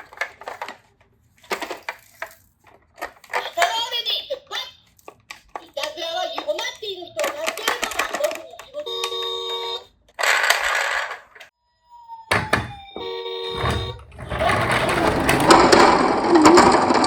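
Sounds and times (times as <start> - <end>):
toy short ringing tone: 8.6 - 9.9.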